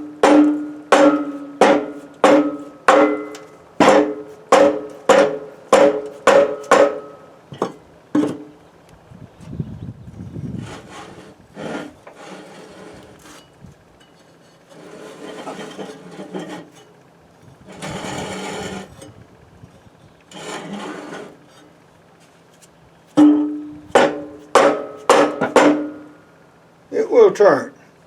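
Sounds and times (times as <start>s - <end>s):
rusty mower spindles grinding: 0.0s - 8.6s, 10.3s - 26.2s
sharp metallic knocks: 0.0s - 8.6s, 23.2s - 26.2s.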